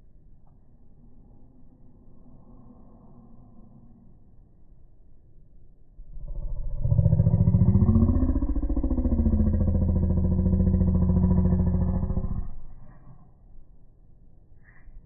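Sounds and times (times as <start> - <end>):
engine pulsing hum: 0.0 - 14.8.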